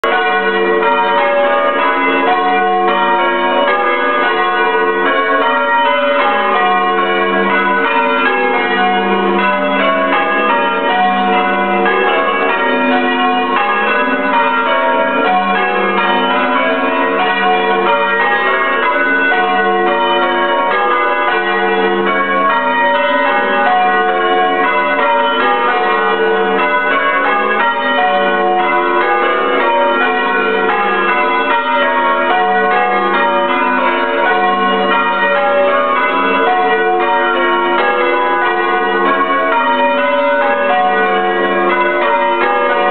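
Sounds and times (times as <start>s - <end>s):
church bells ringing: 0.0s - 42.9s.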